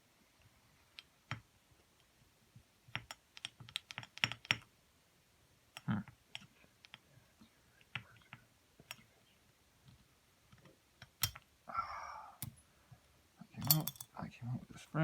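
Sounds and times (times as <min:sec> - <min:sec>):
metal parts and tools clinking: 0:13.6 - 0:14.1.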